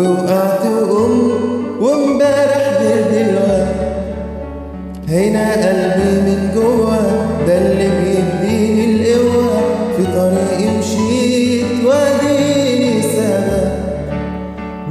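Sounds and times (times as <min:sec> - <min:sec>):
man singing ornamented melody: 0:00.0 - 0:04.4, 0:05.0 - 0:14.9
instrumental backing: 0:00.0 - 0:14.9.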